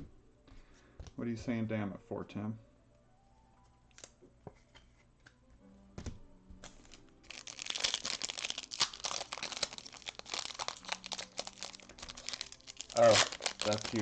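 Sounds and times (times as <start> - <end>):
wrapper tearing and crinkling: 6.8 - 14.0.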